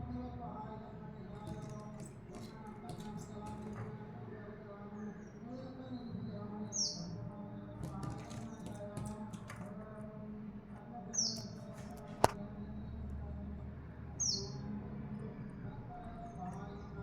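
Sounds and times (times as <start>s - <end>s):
small bird chirping: 5.2s - 7.2s, 11.1s - 11.8s, 14.2s - 14.6s.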